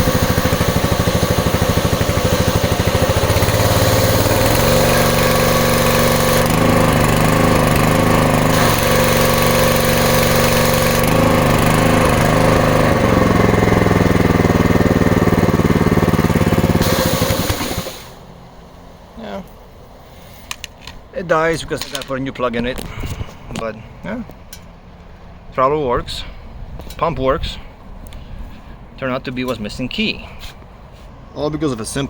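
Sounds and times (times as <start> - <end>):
pressure washer engine running: 0.0 - 18.3.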